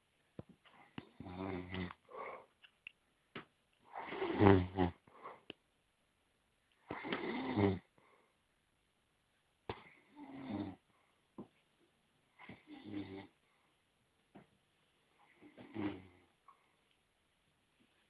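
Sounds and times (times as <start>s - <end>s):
heavy deep snoring: 1.2s - 2.0s, 4.0s - 5.0s, 6.9s - 7.9s.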